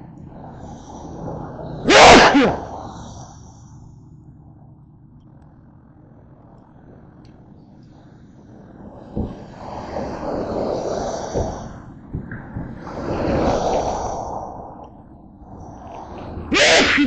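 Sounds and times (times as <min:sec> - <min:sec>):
tyres hissing on wet road: 0:00.5 - 0:01.2, 0:09.4 - 0:11.8, 0:13.0 - 0:14.4.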